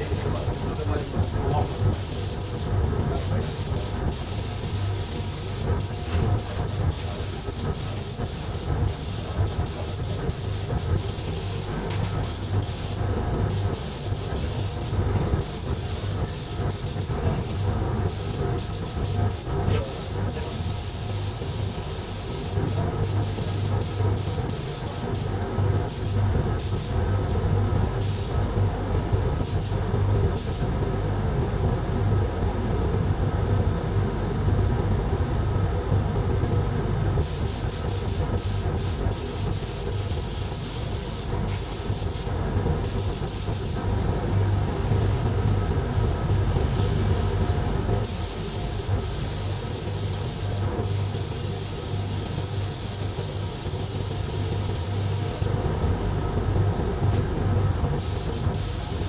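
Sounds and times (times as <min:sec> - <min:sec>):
air gun hissing: 0:00.0 - 0:27.1, 0:27.8 - 0:28.6, 0:29.4 - 0:30.7, 0:37.2 - 0:44.2, 0:48.0 - 0:55.6, 0:58.0 - 0:59.0
air compressor humming: 0:00.0 - 0:59.0.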